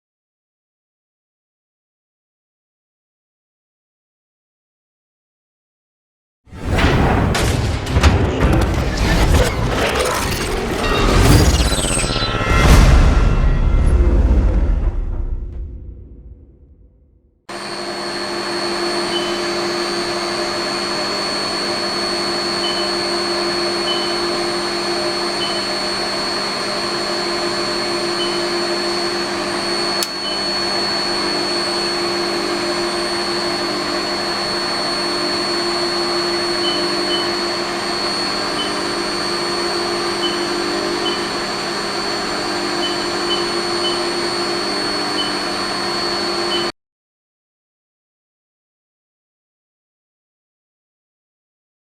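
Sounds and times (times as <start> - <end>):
lathe running with whine: 17.5 - 46.7
brief click: 30.0 - 30.2.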